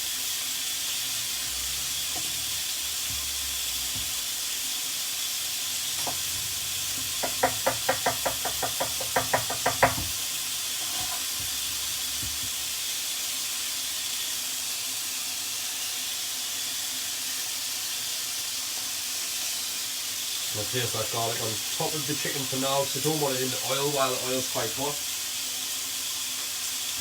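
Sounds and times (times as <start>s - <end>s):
meat sizzling in hot oil: 0.0s - 27.0s
sharp knocks: 7.2s - 10.1s.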